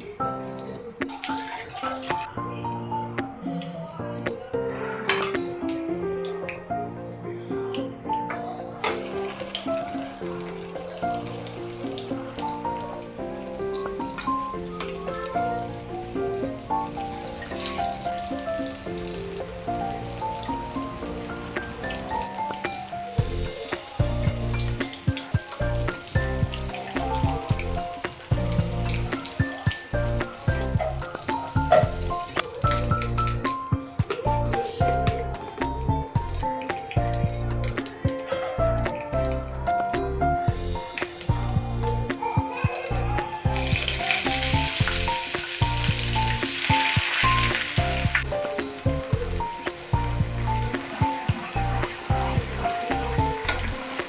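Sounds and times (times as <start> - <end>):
instrumental background music: 0.0 - 54.0
food sizzling in hot oil: 8.9 - 38.2, 43.1 - 54.0.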